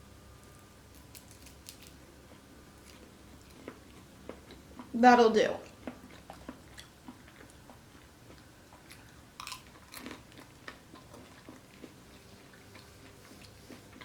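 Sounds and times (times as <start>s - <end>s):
chewing food: 0.9s - 5.0s, 5.6s - 14.0s
crunchy bites: 8.3s - 12.0s.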